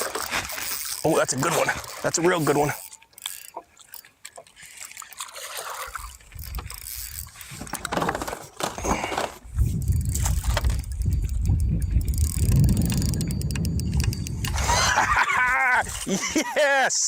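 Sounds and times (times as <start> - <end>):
fishing tackle clicks and knocks: 0.0 - 14.9
wind rumbling on microphone: 6.2 - 8.0, 8.8 - 16.1.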